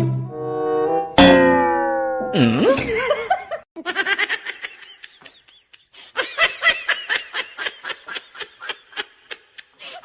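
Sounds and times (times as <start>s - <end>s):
high-pitched giggling: 2.4s - 10.0s.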